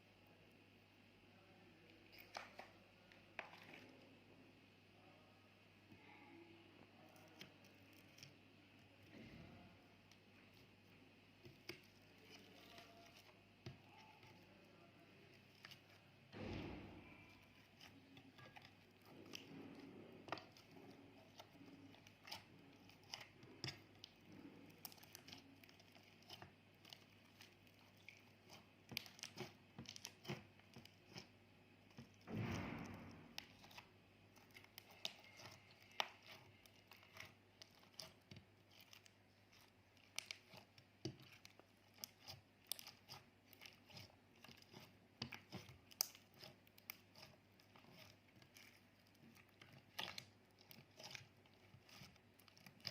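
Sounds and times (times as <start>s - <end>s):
slime squelch: 0.0s - 52.9s
sticky slime clicks and crackles: 34.4s - 52.9s.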